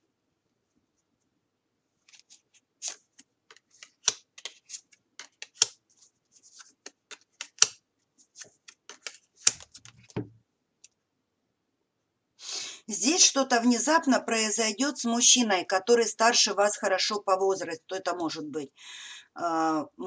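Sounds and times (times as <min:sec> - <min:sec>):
cards clicking on table: 0:02.1 - 0:05.8, 0:06.5 - 0:07.8, 0:08.4 - 0:10.3.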